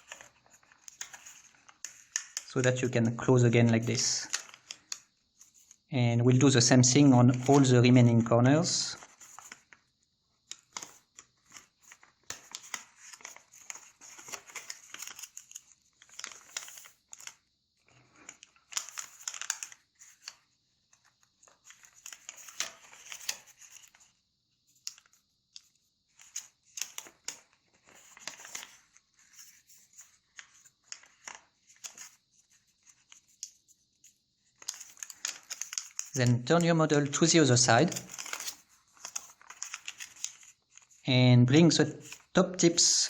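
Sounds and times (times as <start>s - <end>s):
paper creasing crackles: 0.0s - 5.8s, 6.5s - 9.7s, 10.5s - 20.4s, 21.4s - 24.0s, 26.1s - 41.0s, 42.0s - 43.0s
paper rustling and crinkling: 0.0s - 5.8s, 6.5s - 9.8s, 10.5s - 24.1s, 24.7s - 41.0s, 41.9s - 42.9s.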